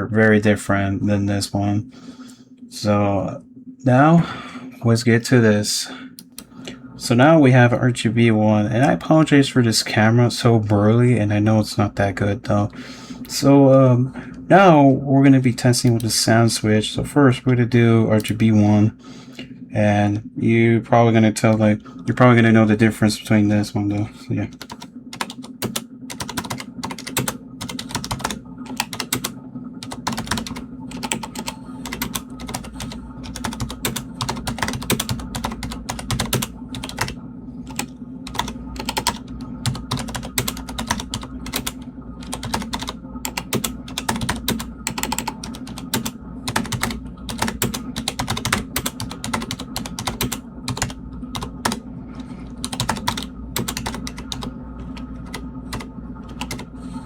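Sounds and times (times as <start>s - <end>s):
fast typing on mechanical keyboard: 24.5s - 51.8s, 52.6s - 54.5s, 55.2s - 56.7s.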